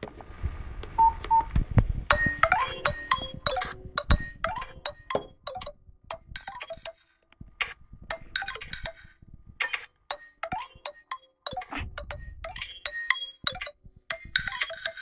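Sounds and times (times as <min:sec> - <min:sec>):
phone ringtone chime notes: 0:02.1 - 0:05.8.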